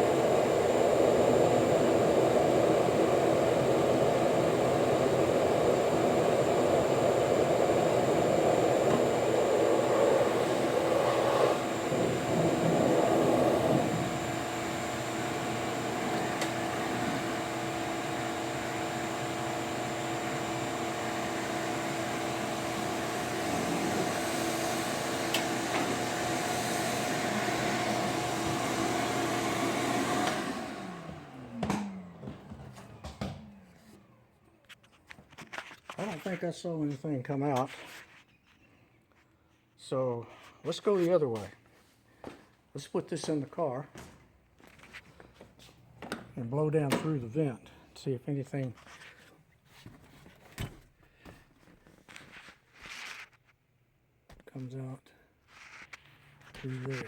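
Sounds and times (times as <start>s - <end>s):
electric air blower running: 0.0s - 32.8s.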